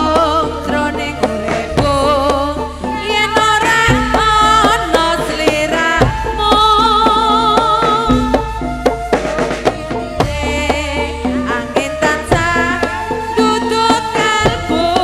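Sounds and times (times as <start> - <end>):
drum strokes: 0.0 - 15.0.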